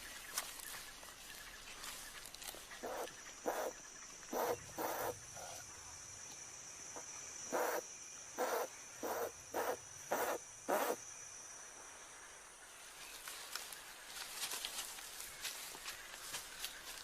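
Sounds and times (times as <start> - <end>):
high insect drone: 0.0 - 17.0
chimpanzees hooting: 2.8 - 5.2, 7.5 - 7.8, 8.4 - 11.0.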